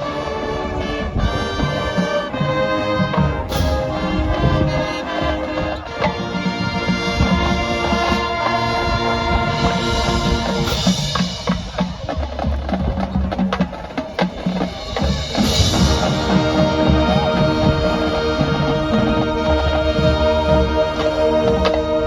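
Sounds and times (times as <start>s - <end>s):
brass chords: 0.0s - 22.0s
drumline percussion: 0.0s - 22.0s.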